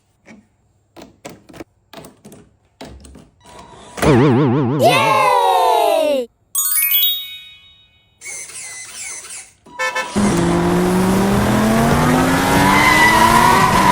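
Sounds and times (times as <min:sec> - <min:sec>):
car engine sound effect rising: 0:04.0 - 0:05.2, 0:10.2 - 0:13.9
bright chime: 0:06.6 - 0:08.2.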